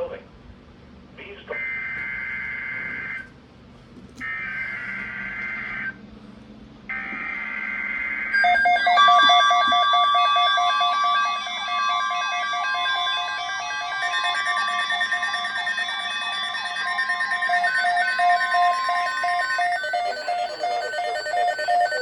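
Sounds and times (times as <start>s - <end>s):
high digital data tones: 8.4s - 22.0s
pulsing alert tone: 12.7s - 22.0s.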